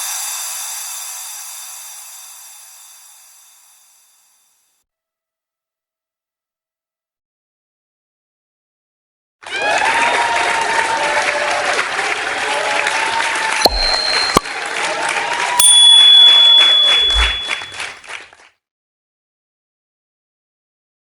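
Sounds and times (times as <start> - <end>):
crowd applauding and cheering: 9.4 - 18.4
bright ding tones: 13.7 - 14.8, 15.6 - 17.9.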